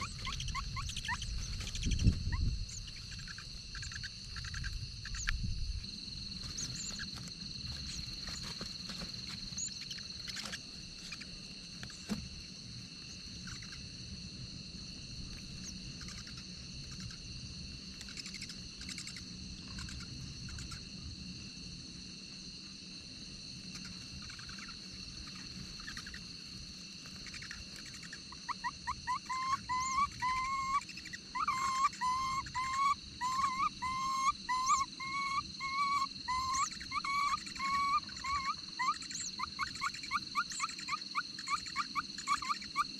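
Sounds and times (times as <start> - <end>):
bird chirps: 0.0 - 5.4, 6.4 - 12.2, 27.2 - 42.9
high insect drone: 0.0 - 42.9.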